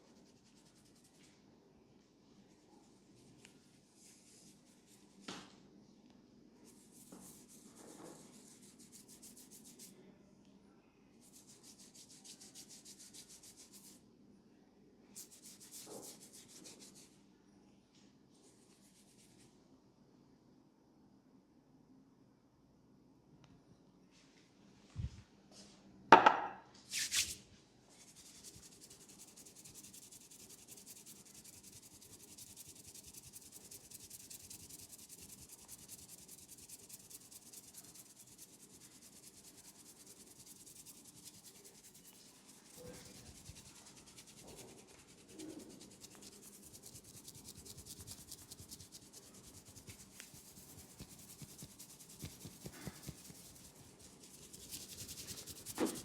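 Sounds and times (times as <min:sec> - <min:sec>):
hands rubbing hair and skin: 0:03.3 - 0:05.3, 0:26.9 - 0:27.4, 0:28.0 - 0:56.0.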